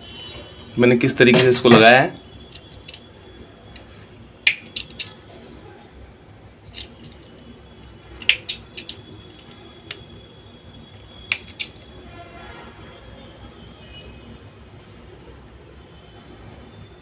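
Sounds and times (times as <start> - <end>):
clicks of small parts handled: 2.5 - 3.1, 4.5 - 5.2, 6.6 - 7.5, 8.2 - 10.0, 11.3 - 11.9.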